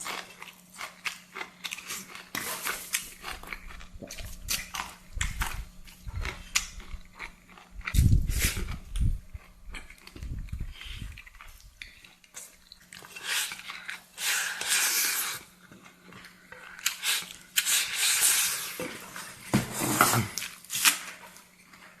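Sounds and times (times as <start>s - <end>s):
person chewing: 0.0s - 19.4s.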